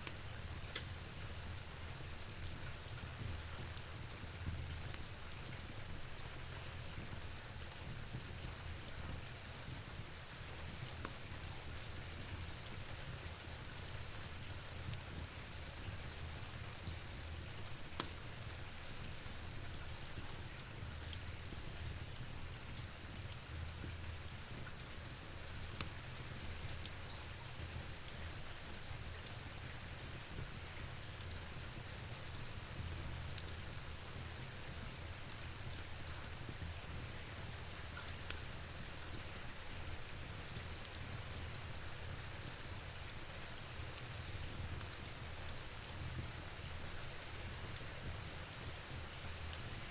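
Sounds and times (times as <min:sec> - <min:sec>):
small sharp ticks: 0:00.0 - 0:01.2, 0:16.4 - 0:21.8.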